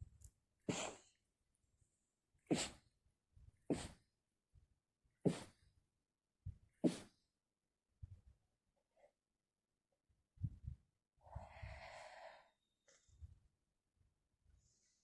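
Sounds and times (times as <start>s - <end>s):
short breaths: 11.2s - 12.6s.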